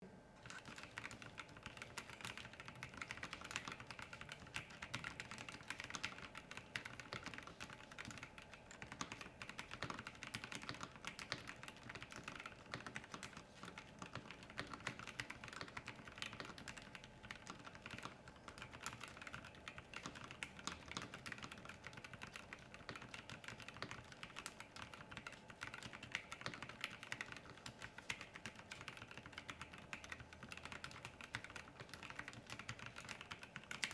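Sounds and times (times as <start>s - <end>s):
mechanical keyboard typing: 0.4s - 33.9s.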